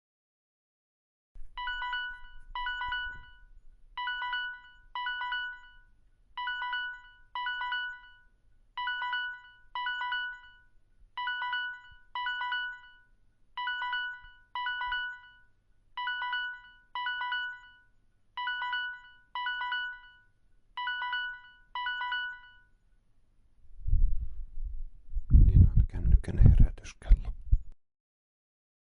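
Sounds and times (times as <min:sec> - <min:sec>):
phone double chime: 0:01.6 - 0:22.7.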